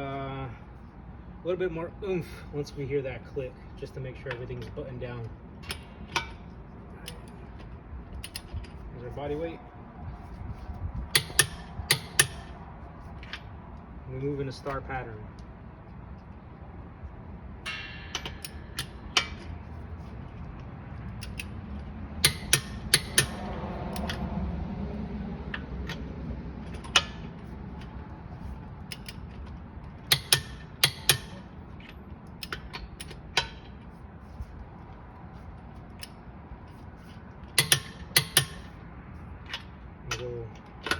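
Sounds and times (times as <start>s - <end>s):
ratchet mechanism noise: 11.1s - 12.6s, 20.2s - 24.2s, 25.5s - 34.4s, 35.9s - 38.8s
torque wrench clicks: 21.2s - 21.5s, 30.1s - 31.4s.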